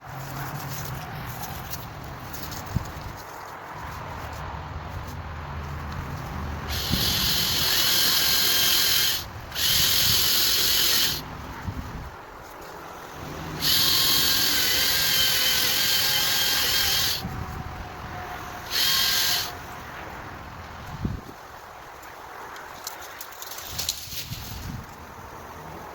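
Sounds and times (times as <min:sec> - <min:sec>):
electric chainsaw whining: 0:06.7 - 0:11.3, 0:13.1 - 0:17.3, 0:18.6 - 0:19.6.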